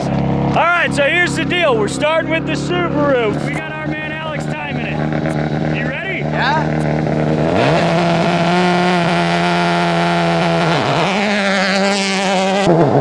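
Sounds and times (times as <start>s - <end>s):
rally car engine revving: 3.3s - 13.0s.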